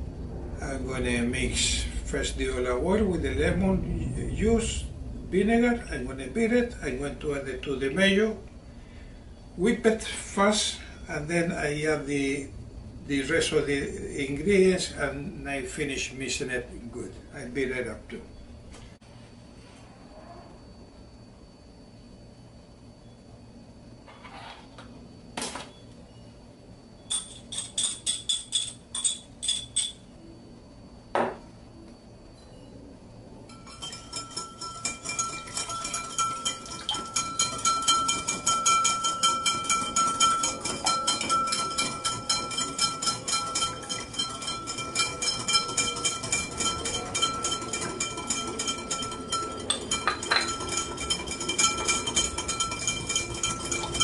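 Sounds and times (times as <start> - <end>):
steady ring: 33.5 - 54.0
whisk clinking against bowl: 33.5 - 54.0.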